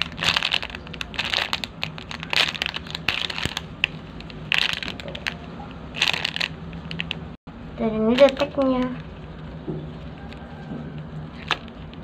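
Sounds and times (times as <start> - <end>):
foam toy squeezed crinkly rustle: 0.0 - 7.1, 8.0 - 9.4.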